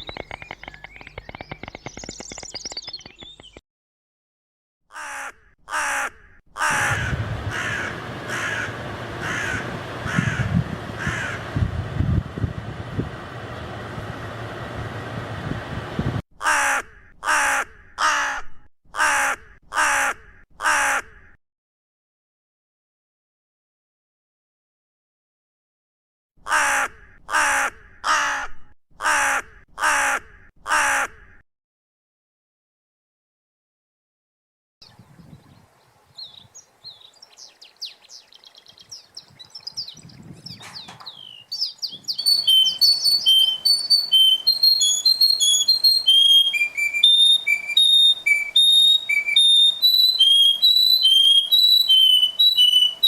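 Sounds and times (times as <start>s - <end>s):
bird calling: 0.0s - 3.6s, 4.9s - 11.5s, 36.1s - 53.0s.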